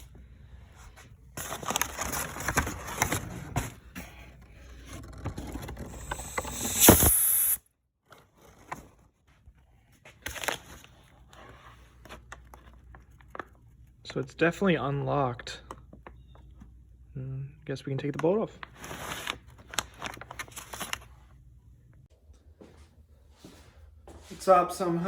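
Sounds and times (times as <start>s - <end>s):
compressed air hissing: 6.0s - 7.6s.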